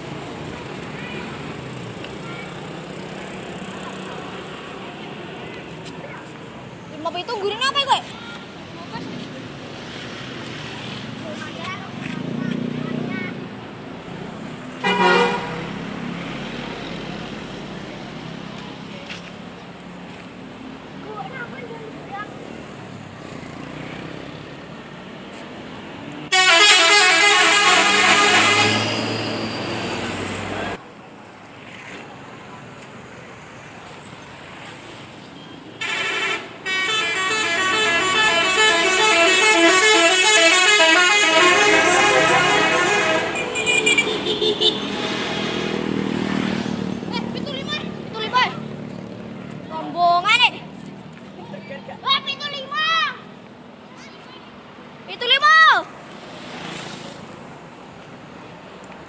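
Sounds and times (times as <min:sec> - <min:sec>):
traffic rumble: 0:00.0 - 0:59.0
bus horn blast: 0:14.8 - 0:15.8, 0:26.3 - 0:29.8, 0:35.8 - 0:44.9.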